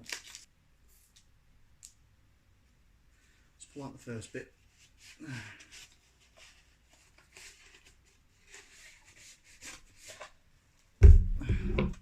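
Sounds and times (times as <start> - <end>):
packaging rustling and crinkling: 0.0 - 0.5
loud low thump: 11.0 - 12.0.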